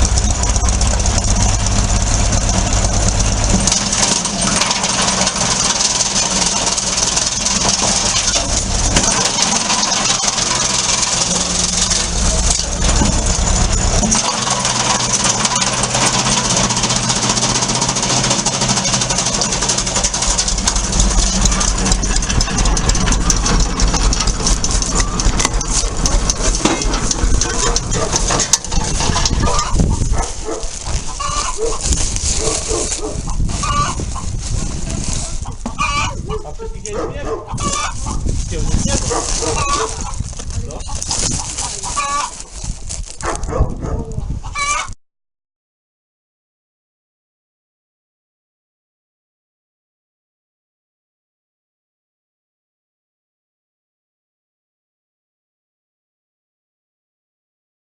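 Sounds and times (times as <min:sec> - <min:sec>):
tractor engine and spinning drum: 0:00.0 - 0:45.0
wood chipping crackling clicks: 0:18.4 - 0:33.2, 0:38.8 - 0:43.6.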